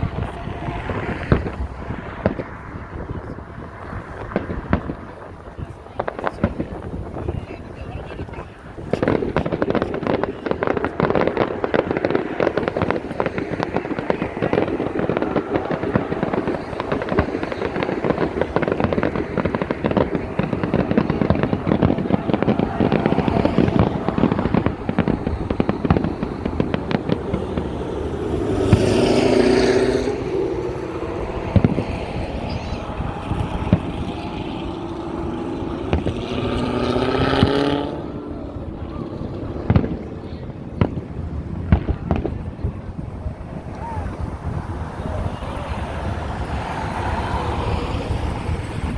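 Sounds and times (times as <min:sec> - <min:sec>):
drawn-out pitch-shifting firework sound: 0:00.0 - 0:48.9
fireworks crackling and popping: 0:00.0 - 0:48.9.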